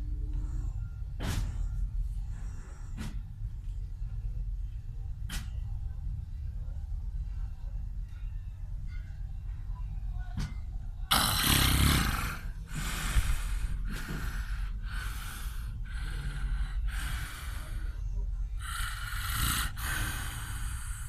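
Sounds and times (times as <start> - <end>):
snoring: 11.1 - 13.5, 18.6 - 21.0.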